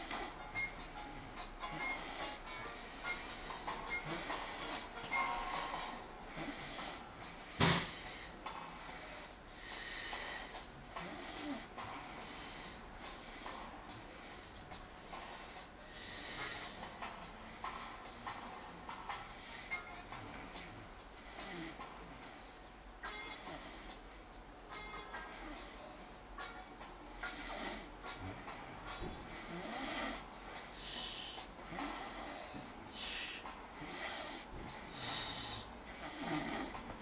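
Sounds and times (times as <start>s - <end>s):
man snoring: 0.0s - 14.7s, 20.2s - 22.6s, 27.2s - 28.7s, 29.3s - 37.0s.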